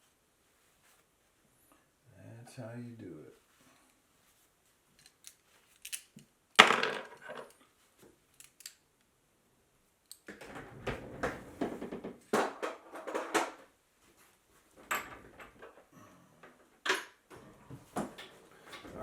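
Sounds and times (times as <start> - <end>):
tools clattering and rattling: 5.0 - 7.6, 10.1 - 13.7, 14.7 - 19.0.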